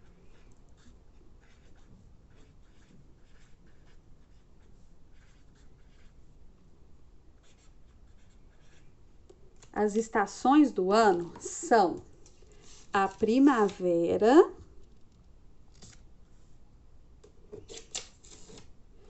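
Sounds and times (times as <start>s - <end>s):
pen scratching on paper: 0.0s - 6.2s, 7.4s - 9.0s.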